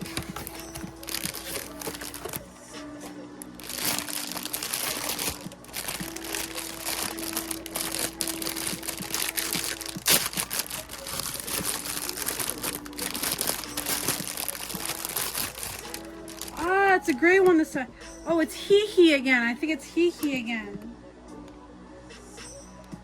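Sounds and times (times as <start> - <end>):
packaging crinkling: 0.0 - 2.5, 3.4 - 17.2
sharp packaging crack: 0.0 - 2.5, 3.4 - 16.7.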